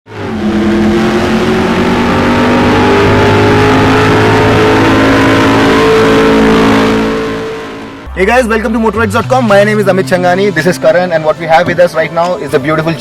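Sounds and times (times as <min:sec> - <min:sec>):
car engine running under load: 0:00.1 - 0:08.1.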